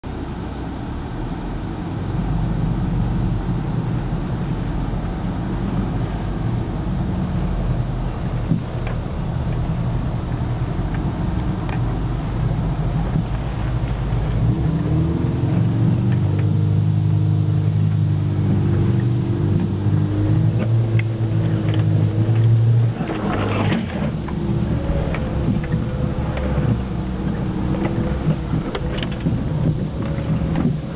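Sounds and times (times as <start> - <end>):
vehicle engine running hard: 0.0 - 30.9.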